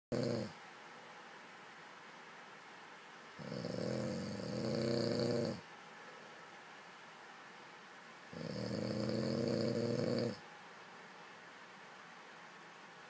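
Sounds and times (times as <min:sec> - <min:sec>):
person snoring: 0:00.1 - 0:00.5, 0:03.4 - 0:05.6, 0:08.3 - 0:10.4.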